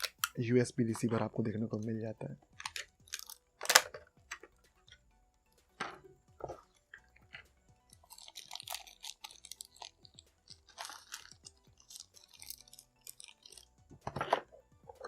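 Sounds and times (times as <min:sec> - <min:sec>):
plastic packaging crinkling: 0:08.0 - 0:13.7.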